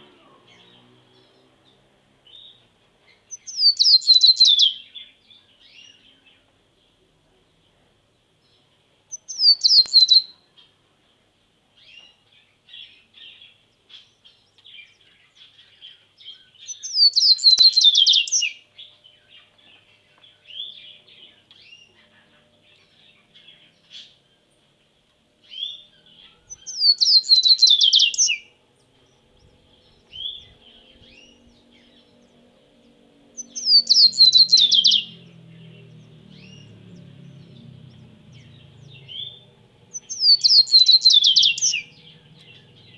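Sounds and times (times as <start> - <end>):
soft bird chirps: 0.0 - 42.9
low hum: 28.5 - 34.0, 34.6 - 40.2.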